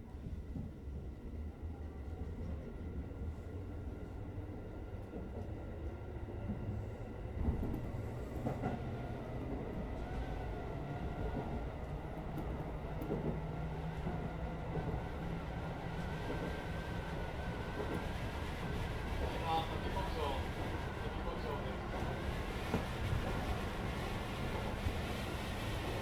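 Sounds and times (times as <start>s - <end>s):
train wheels rumbling on rail: 0.0s - 26.0s.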